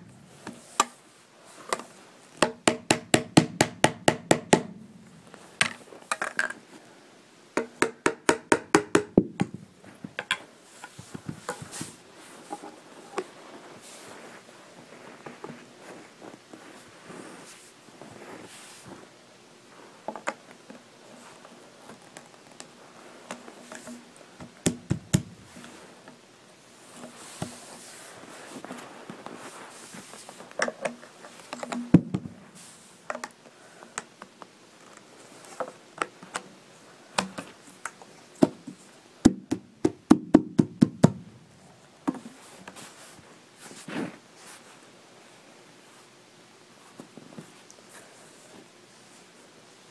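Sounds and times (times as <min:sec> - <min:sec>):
parts knocking and tapping: 0:02.4 - 0:04.8, 0:05.6 - 0:06.6, 0:07.6 - 0:11.9, 0:23.3 - 0:25.4, 0:30.6 - 0:32.4, 0:33.1 - 0:33.4, 0:37.2 - 0:41.3.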